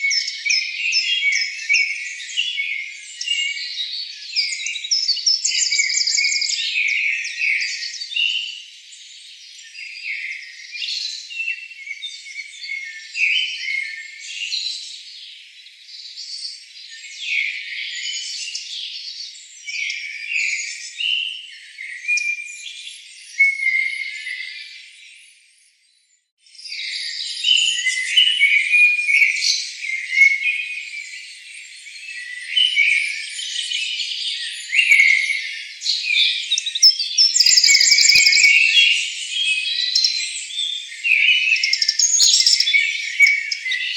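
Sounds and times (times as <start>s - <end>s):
chorus of birds chirping: 0.0s - 43.9s
animal calls chirps and whistles: 26.9s - 43.9s.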